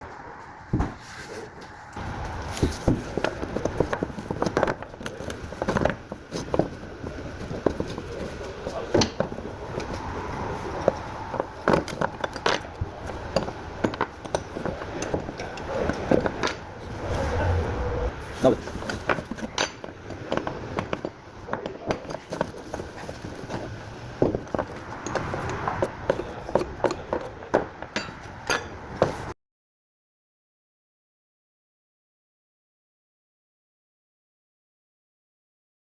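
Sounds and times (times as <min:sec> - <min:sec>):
low background rumble: 0:12.7 - 0:18.4.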